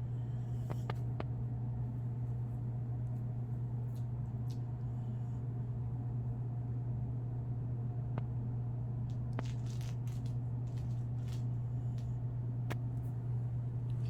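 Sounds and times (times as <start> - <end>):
steady low hum: 0.0 - 14.0
faint clicks and crackles: 9.1 - 13.1.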